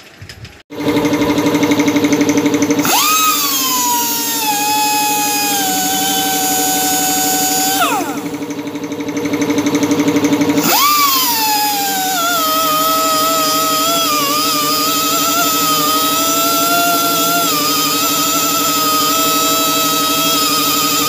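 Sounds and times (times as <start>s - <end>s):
tyre buffing machine whining: 0.7s - 21.0s.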